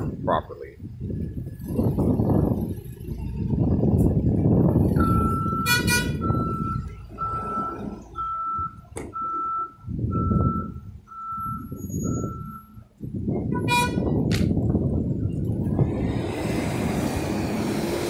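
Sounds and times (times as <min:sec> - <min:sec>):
forklift engine running: 0:00.9 - 0:18.0
reversing alarm beeping: 0:04.9 - 0:12.9.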